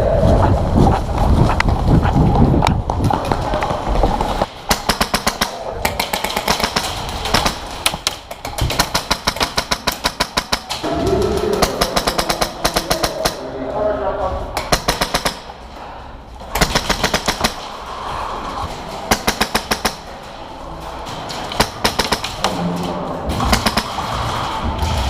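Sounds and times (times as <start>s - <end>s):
airsoft guns firing full-auto: 11.6s - 13.4s, 16.6s - 17.6s.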